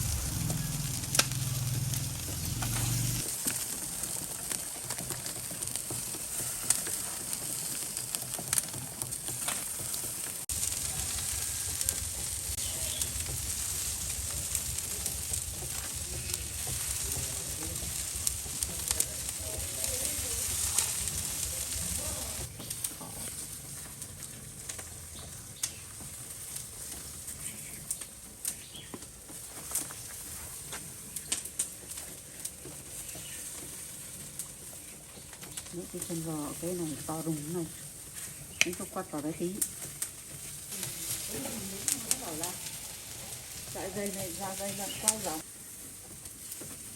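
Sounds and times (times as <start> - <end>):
low rumble: 0.0 - 3.3, 10.5 - 22.5
meat sizzling on grill: 0.0 - 46.9.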